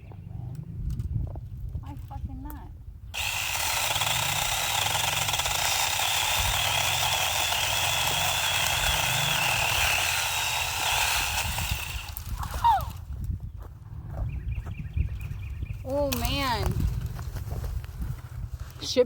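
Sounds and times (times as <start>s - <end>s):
handheld power saw whine: 3.2s - 12.5s.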